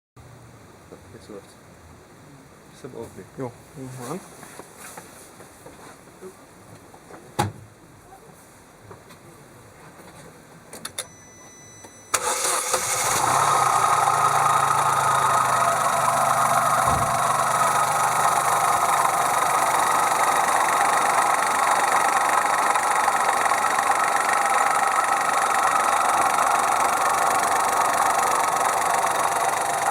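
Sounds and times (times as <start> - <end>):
car engine starting and running: 12.1 - 29.9.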